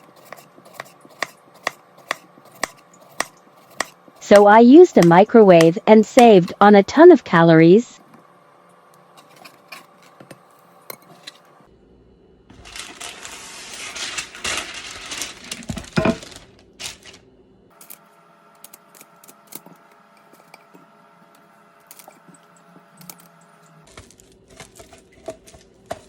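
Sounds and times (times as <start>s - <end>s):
rustling scraping noise: 12.6s - 17.2s.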